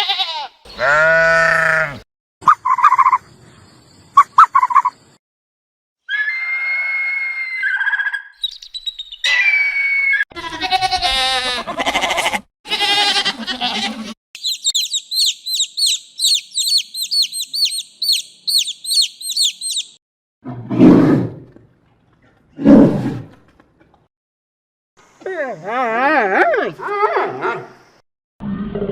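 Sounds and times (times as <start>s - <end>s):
bird chirping rapidly: 8.2s - 9.3s, 14.4s - 20.0s
long wavering calls: 14.4s - 20.0s.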